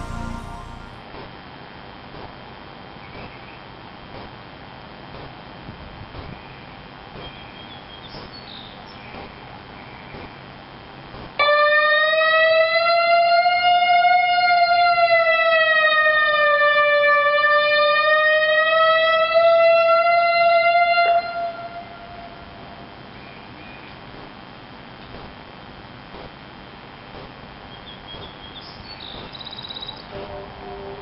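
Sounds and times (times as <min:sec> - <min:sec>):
lightning warning siren: 0:11.4 - 0:22.8.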